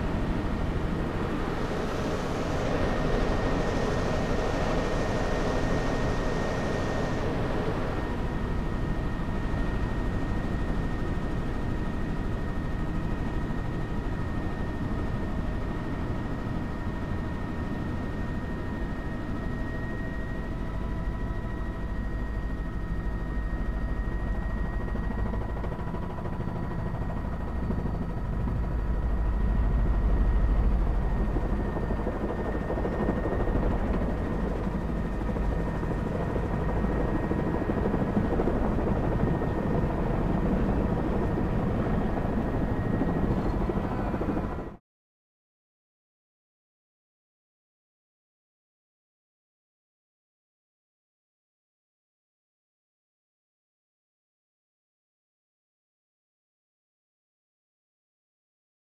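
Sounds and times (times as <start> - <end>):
helicopter rotor and engine drone: 0.0 - 44.8
high turbine whine: 0.0 - 44.8.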